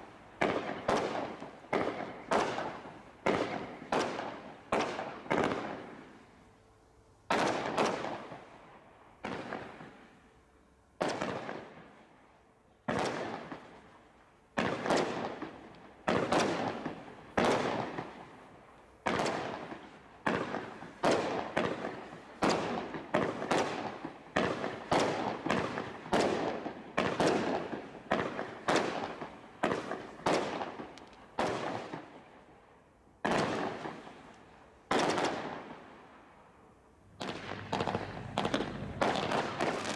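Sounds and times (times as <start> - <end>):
firework bangs: 0.0 - 6.2, 7.3 - 8.5, 14.6 - 18.4, 19.0 - 32.2, 33.2 - 34.3, 34.9 - 36.0, 37.1 - 39.9.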